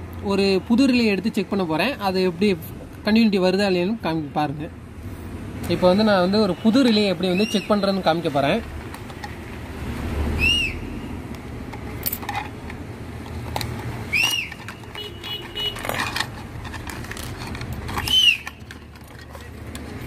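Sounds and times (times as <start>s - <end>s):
street traffic hum: 0.0s - 20.0s
small parts clicking and rattling: 8.8s - 9.5s, 11.4s - 20.0s.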